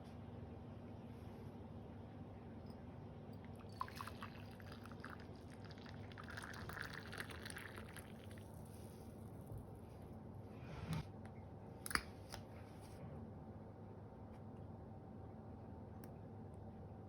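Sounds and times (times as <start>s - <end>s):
liquid pouring: 3.4s - 8.8s.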